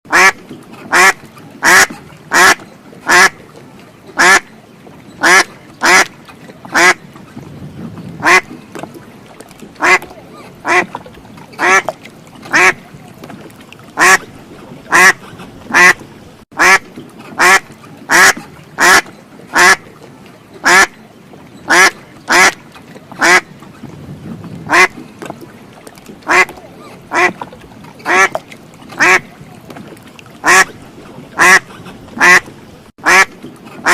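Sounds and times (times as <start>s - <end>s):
duck quacking: 0.1s - 3.4s, 4.2s - 4.4s, 5.2s - 6.1s, 6.7s - 7.0s, 8.2s - 8.5s, 9.8s - 10.9s, 11.6s - 11.9s, 12.5s - 12.8s, 14.0s - 14.3s, 14.9s - 16.0s, 16.6s - 16.8s, 17.4s - 19.8s, 20.6s - 20.9s, 21.7s - 22.6s, 23.2s - 23.4s, 24.7s - 24.9s, 26.2s - 27.4s, 28.1s - 28.4s, 29.0s - 29.3s, 30.4s - 30.7s, 31.4s - 33.9s.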